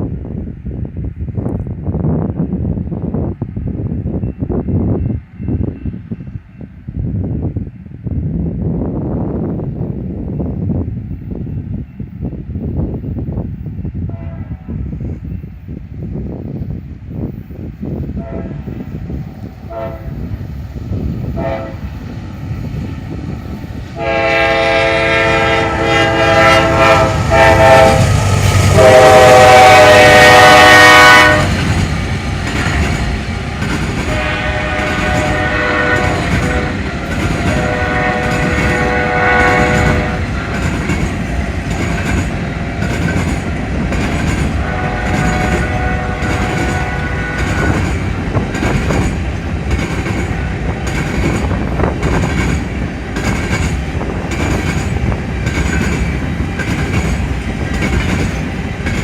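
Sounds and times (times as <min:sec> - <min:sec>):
diesel locomotives rumbling: 0:00.0 - 0:59.0
train horn blasts: 0:14.1 - 0:15.0, 0:18.2 - 0:18.8, 0:19.7 - 0:20.3, 0:21.3 - 0:22.0, 0:24.0 - 0:31.7, 0:34.0 - 0:40.6, 0:44.5 - 0:47.9
train wheels clicking over rail joints: 0:26.0 - 0:59.0.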